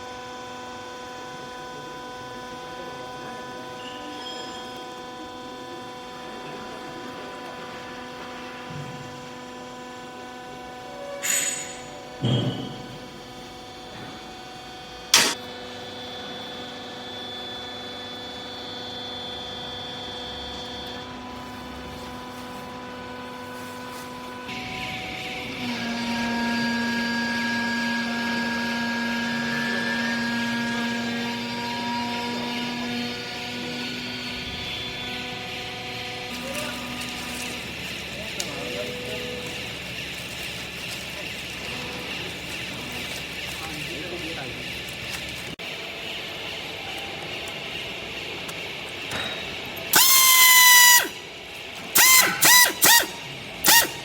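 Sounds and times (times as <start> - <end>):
hydraulic motor and pump hum: 0.0 - 54.0.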